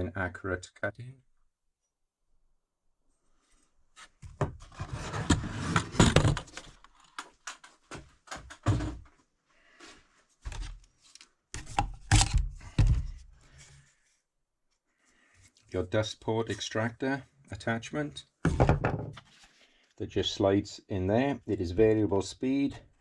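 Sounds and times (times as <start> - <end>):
plastic accessories clicking and clattering: 5.8 - 9.0.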